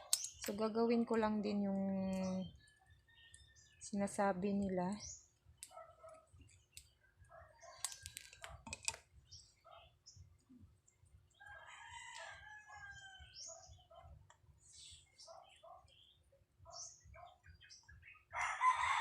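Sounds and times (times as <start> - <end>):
small metal parts clicking: 0.0 - 1.2, 7.8 - 9.0
rooster crowing: 11.4 - 13.4, 18.4 - 19.0.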